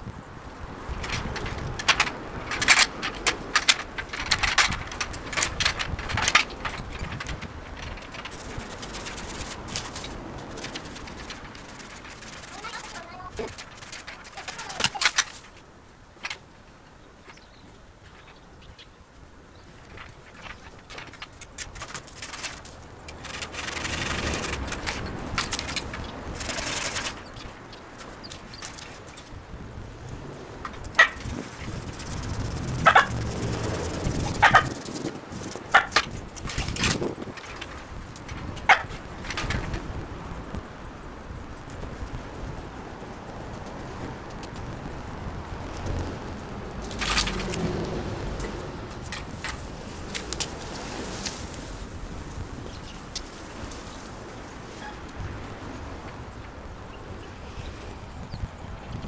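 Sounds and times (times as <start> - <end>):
branches and twigs snapping: 0.7 - 16.4, 19.8 - 40.6, 43.1 - 54.3
hand saw cutting branch: 22.0 - 27.2.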